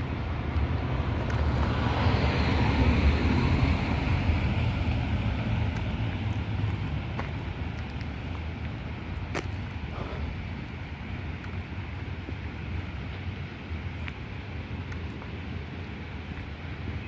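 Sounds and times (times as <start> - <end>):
car passing by: 0.0 - 8.4
low wind rumble: 0.0 - 17.0.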